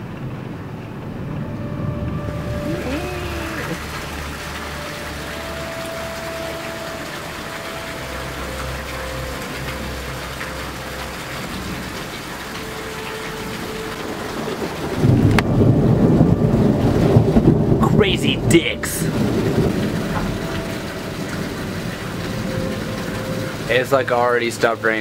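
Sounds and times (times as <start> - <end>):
loud low rumble: 0.0 - 4.5
rain hiss: 0.0 - 25.0.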